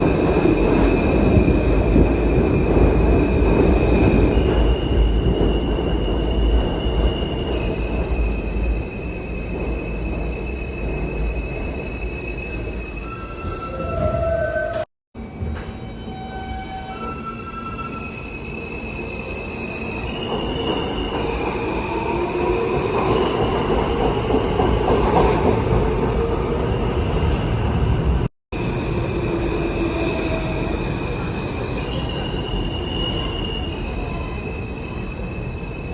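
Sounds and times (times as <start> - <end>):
train wheels rumbling on track: 0.0 - 15.9
train high whine: 0.0 - 35.9
high wheel squeals: 8.2 - 21.2.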